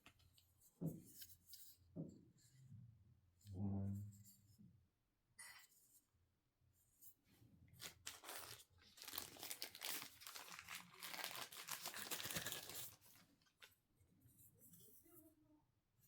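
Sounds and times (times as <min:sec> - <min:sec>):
packaging rustling and crackling: 0:07.8 - 0:13.8.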